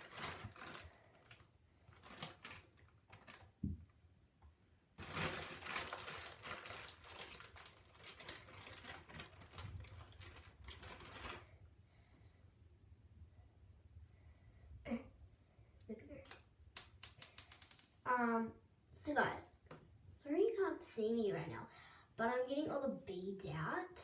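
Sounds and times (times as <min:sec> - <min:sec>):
plastic bag crackling and crinkling: 0:00.0 - 0:03.7, 0:05.0 - 0:11.6.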